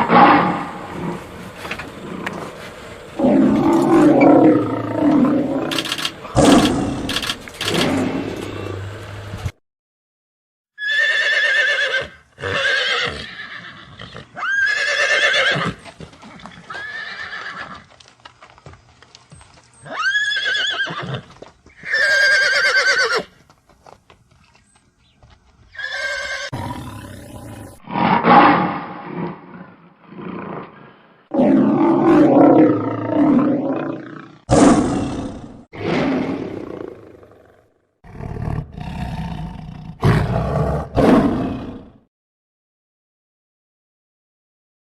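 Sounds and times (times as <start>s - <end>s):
horse whinnying: 10.8s - 15.8s, 16.4s - 17.9s, 19.8s - 23.3s, 25.7s - 26.7s.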